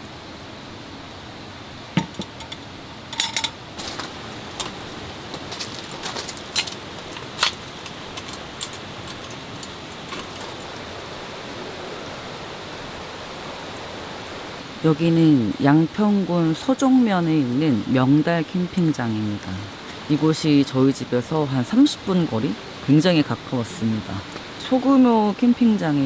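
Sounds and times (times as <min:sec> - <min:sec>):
steady rain: 0:00.0 - 0:26.0
sharp clicks and clinks: 0:02.0 - 0:04.8, 0:05.6 - 0:10.7.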